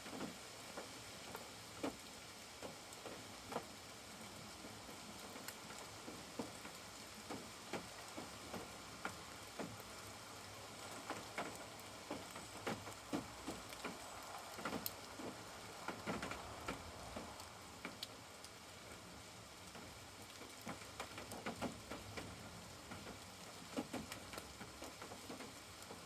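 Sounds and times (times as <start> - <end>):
raindrops tapping: 10.8 - 18.2.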